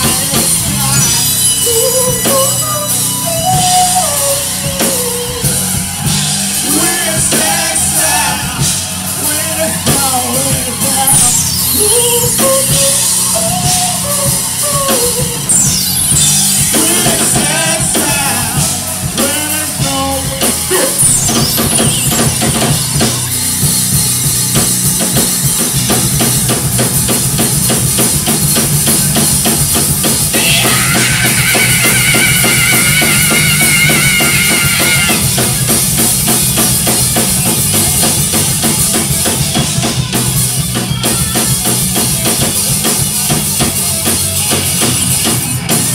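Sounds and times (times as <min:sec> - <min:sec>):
person singing: 0:00.0 - 0:22.8, 0:30.3 - 0:35.8
drum kit beat: 0:00.0 - 0:45.9
rock band playing live: 0:00.0 - 0:45.9.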